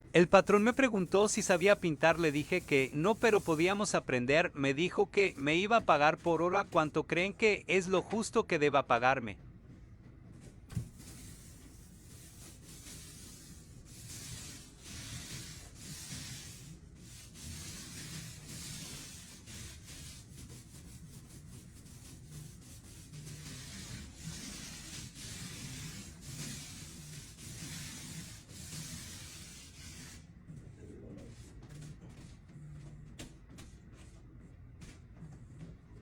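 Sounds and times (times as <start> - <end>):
sandpaper scratching on wood: 0.2 - 3.9, 11.0 - 30.2.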